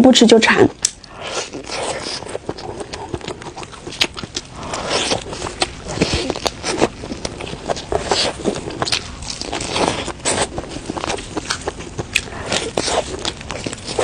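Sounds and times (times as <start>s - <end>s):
person chewing: 0.7s - 14.0s
wet mouth clicks and smacks: 0.8s - 7.0s.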